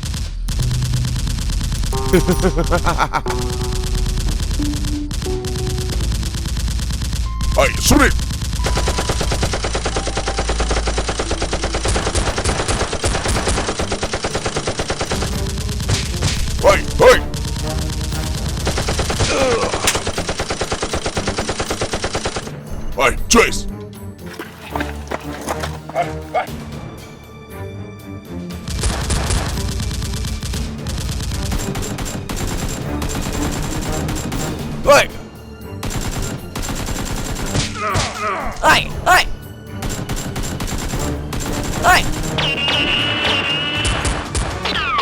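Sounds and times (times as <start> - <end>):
rapid automatic gunfire: 0.0 - 1.9, 8.3 - 16.6, 17.3 - 22.5, 28.7 - 34.6, 35.8 - 37.7, 39.8 - 44.8
rapid machine-gun fire: 0.0 - 1.9, 5.9 - 7.3, 8.1 - 22.6, 28.7 - 34.7, 35.8 - 37.7, 39.8 - 45.0.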